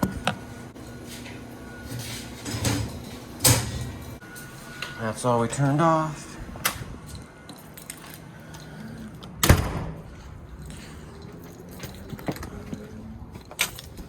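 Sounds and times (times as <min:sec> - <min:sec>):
door banging shut: 0:09.4 - 0:10.0.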